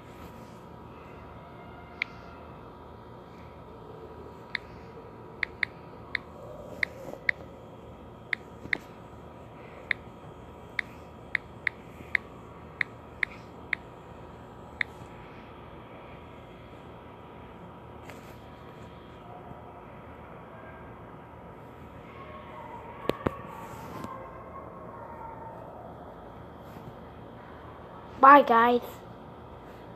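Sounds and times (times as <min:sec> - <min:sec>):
mouse clicks: 0:05.4 - 0:07.4.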